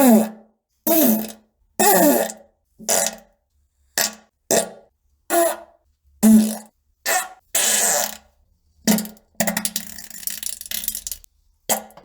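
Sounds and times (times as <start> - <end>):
farts: 6.2 - 8.2.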